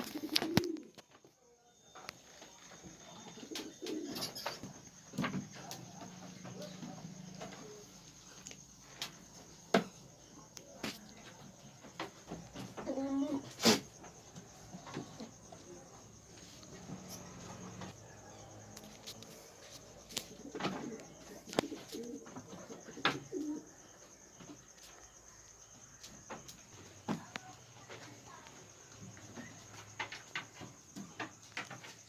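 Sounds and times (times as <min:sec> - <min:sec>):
pigeons cooing: 0:00.0 - 0:01.0, 0:03.0 - 0:04.7, 0:20.2 - 0:23.8.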